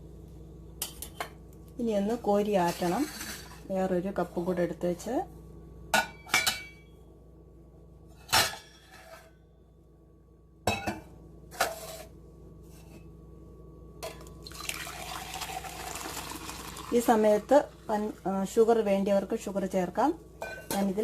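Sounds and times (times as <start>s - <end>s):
cups clinking: 14.0s - 16.9s
liquid pouring into a cup: 14.4s - 17.9s.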